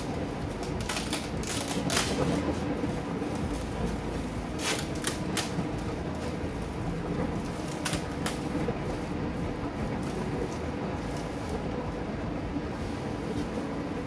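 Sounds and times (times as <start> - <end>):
packaging rustling: 0.0 - 6.4
sharp packaging clicks: 0.6 - 2.4, 4.6 - 5.7.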